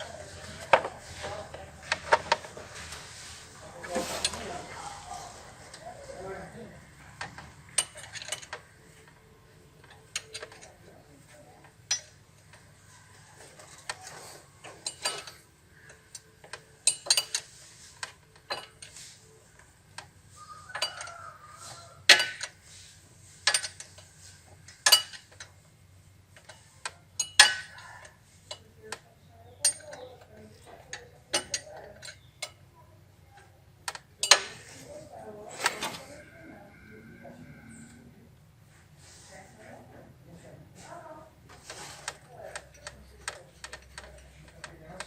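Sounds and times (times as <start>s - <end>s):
metal tools clinking on engine parts: 7.7s - 9.2s, 11.8s - 12.4s, 14.6s - 19.6s, 20.7s - 25.6s, 26.4s - 28.8s, 29.6s - 32.6s, 34.2s - 34.7s.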